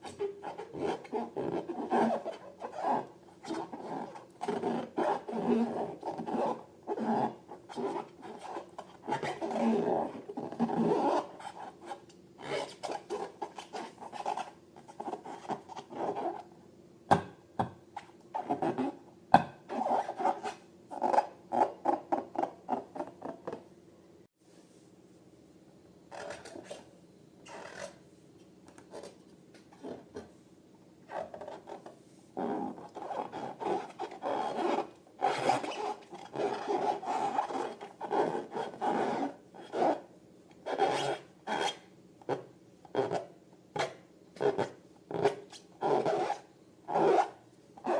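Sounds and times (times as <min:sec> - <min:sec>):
balloons rubbed by hand: 0:31.1 - 0:40.0.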